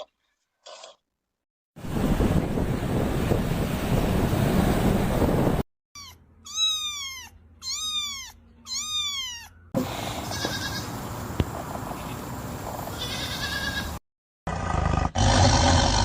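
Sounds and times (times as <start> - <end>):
animal high-pitched cries: 6.0 - 10.9.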